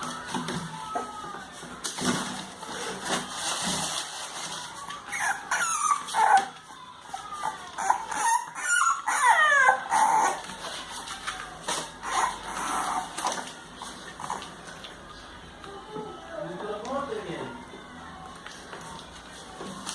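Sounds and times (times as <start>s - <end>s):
puppies whimpering and yipping: 2.6s - 14.8s.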